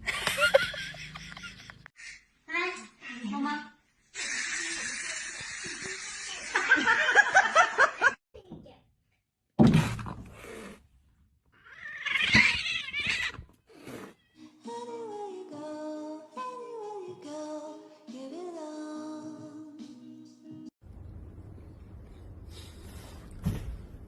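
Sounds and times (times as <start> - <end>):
cat yowling: 11.6 - 13.5
background music with held notes: 14.4 - 20.7.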